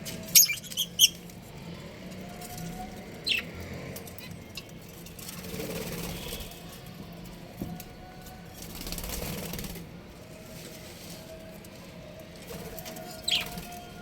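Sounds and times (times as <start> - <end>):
budgies chirping: 0.3 - 1.2, 3.2 - 3.6, 13.2 - 13.7.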